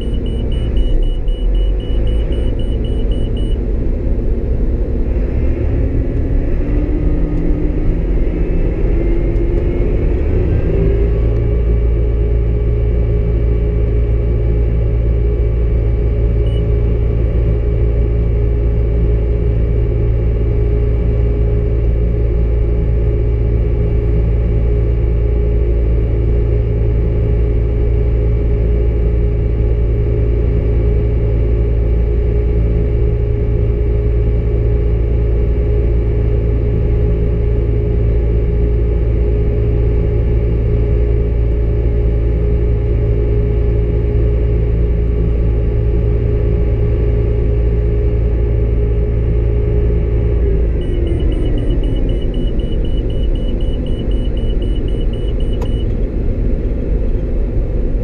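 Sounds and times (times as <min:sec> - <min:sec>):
combine harvester droning: 0:00.0 - 0:24.0, 0:38.6 - 0:58.0.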